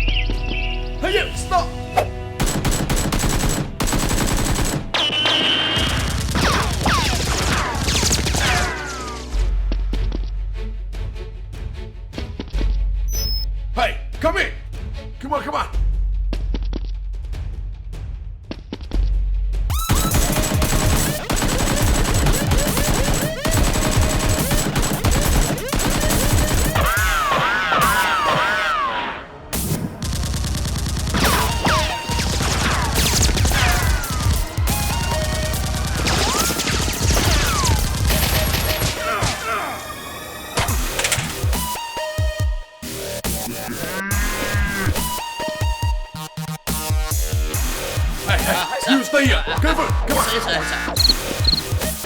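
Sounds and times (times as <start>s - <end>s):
rapid automatic gunfire: 2.4s - 8.6s, 19.7s - 27.1s, 29.6s - 39.0s.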